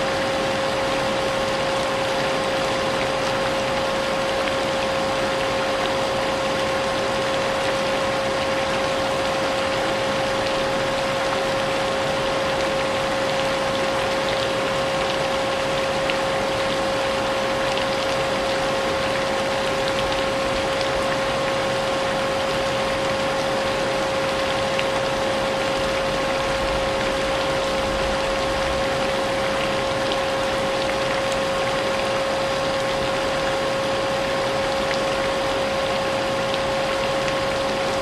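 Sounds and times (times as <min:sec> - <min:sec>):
rain falling: 0:24.4 - 0:38.0.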